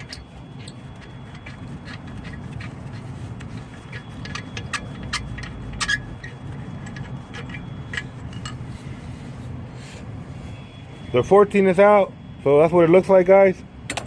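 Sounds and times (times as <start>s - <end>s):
ratchet wrench clicking: 0.0s - 8.6s
low background hum: 0.0s - 14.0s.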